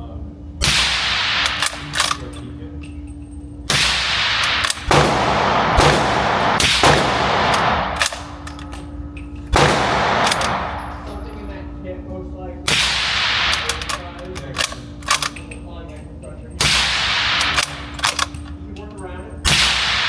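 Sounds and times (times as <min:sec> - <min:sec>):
steady low hum: 0:00.0 - 0:20.0
suppressed rifle shots echoing: 0:00.6 - 0:02.2, 0:03.7 - 0:11.6, 0:12.7 - 0:15.4, 0:16.6 - 0:18.4, 0:19.5 - 0:20.0.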